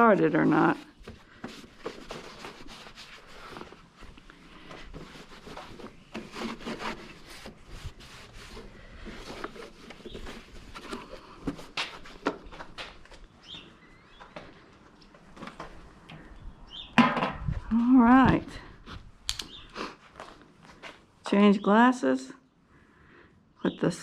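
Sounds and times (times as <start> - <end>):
scraping and rubbing of objects: 0.0 - 13.3.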